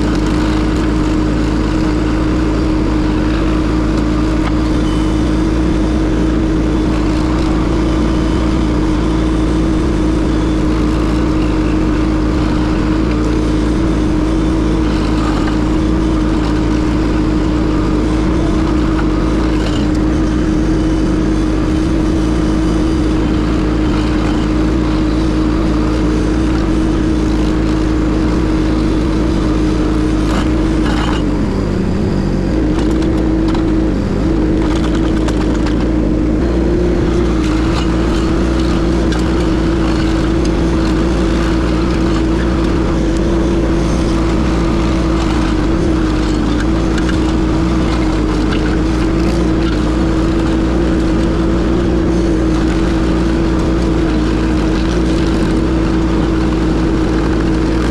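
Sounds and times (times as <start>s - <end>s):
hydraulic stump grinder: 0.0s - 57.9s
skid steer engine droning: 0.0s - 57.9s.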